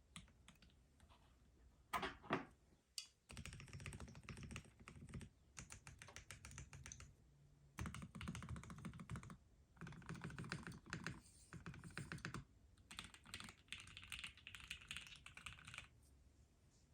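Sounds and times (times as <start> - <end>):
mechanical keyboard typing: 3.3 - 7.1, 7.8 - 15.9.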